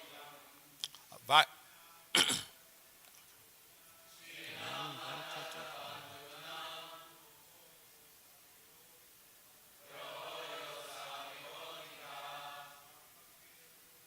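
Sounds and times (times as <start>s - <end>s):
person chanting verse: 0.0s - 0.6s, 4.1s - 7.4s, 9.8s - 13.1s.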